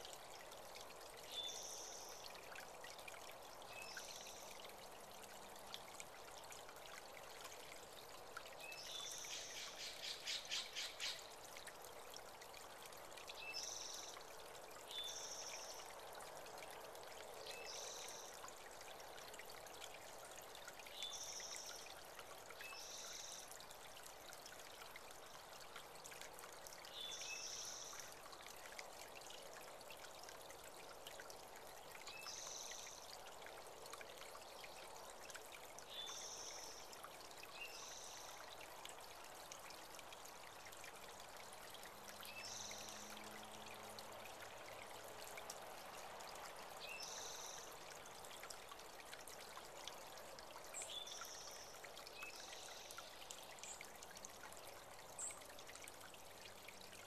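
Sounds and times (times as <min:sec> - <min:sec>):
creek trickling over rocks: 0:00.0 - 0:57.0.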